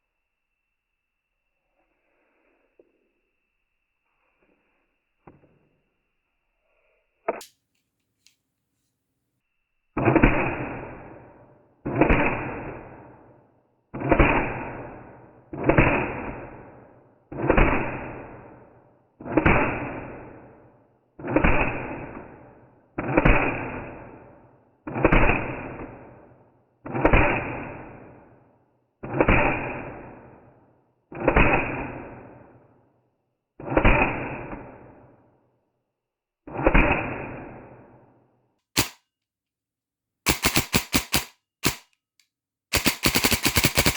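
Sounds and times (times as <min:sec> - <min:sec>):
airsoft gun gearbox striking: 0:38.8 - 0:39.0, 0:40.3 - 0:41.9, 0:42.7 - 0:43.9.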